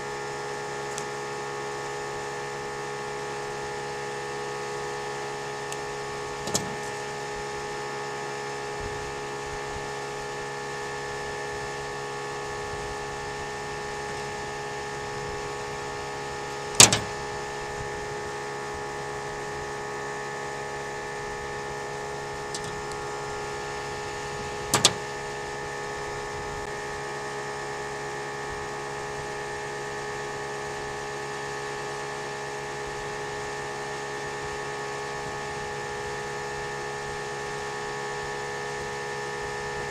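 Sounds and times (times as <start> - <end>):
steady machine hum: 0.0 - 39.9
sharp clicks: 16.8 - 17.2, 22.5 - 23.0.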